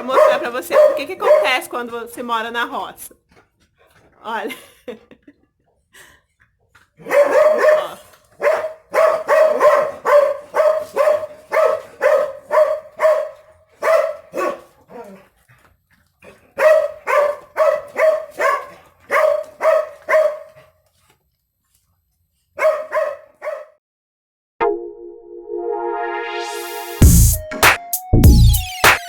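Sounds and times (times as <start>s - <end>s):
dog barking: 0.0s - 2.1s, 7.0s - 15.2s, 16.5s - 20.8s, 22.6s - 23.8s.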